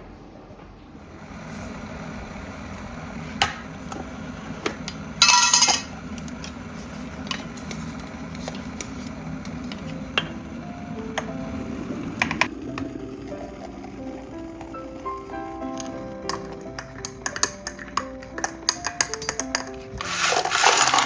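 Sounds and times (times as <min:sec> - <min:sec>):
steady low hum: 0:00.0 - 0:20.7
dishes and utensils clinking: 0:04.6 - 0:06.6, 0:15.4 - 0:21.0
loud ringing clatter: 0:04.9 - 0:06.0.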